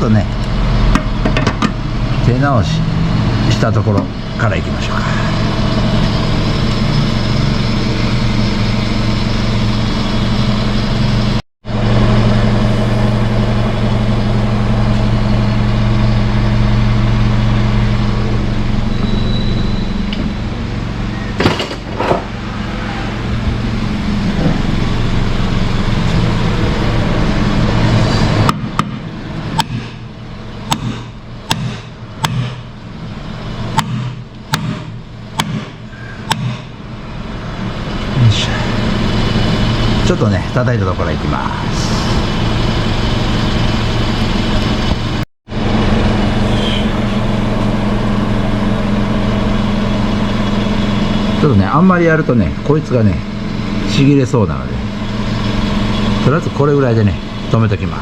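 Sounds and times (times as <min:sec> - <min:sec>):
car engine humming: 0:00.0 - 0:54.2.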